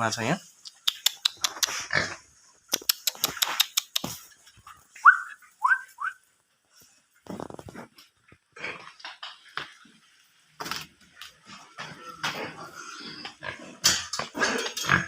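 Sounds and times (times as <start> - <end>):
pigs squealing: 12.1 - 13.8.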